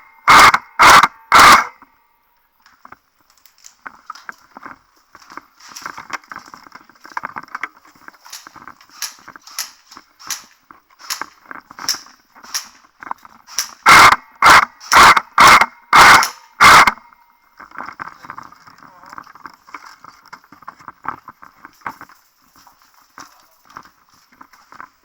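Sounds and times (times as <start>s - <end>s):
loud airsoft gun bursts: 0.2s - 1.8s, 8.3s - 17.1s
distant airsoft gun shots: 8.3s - 12.8s, 13.5s - 17.0s.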